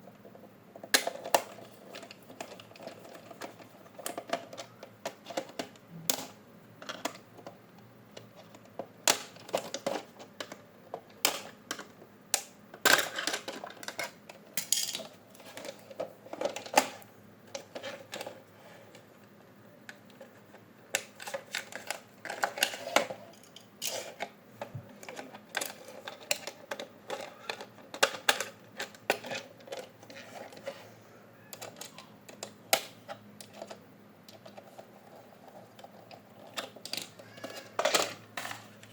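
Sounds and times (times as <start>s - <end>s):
plastic toy parts clattering: 0.3s - 19.0s, 20.1s - 30.8s, 31.5s - 38.9s.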